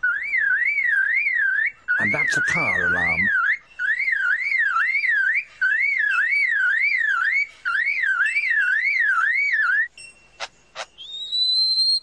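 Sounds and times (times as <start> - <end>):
lyrebird mimicking car alarm: 0.0 - 11.6.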